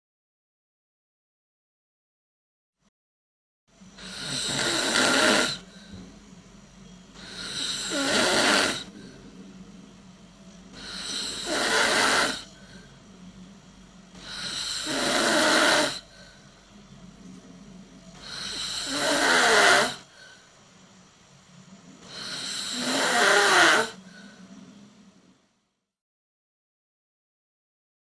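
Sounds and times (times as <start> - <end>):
faint steady hum: 3.7 - 25.9
person snoring: 4.0 - 6.0, 7.2 - 9.4, 10.7 - 13.0, 14.1 - 16.5, 18.2 - 20.5, 22.0 - 24.4.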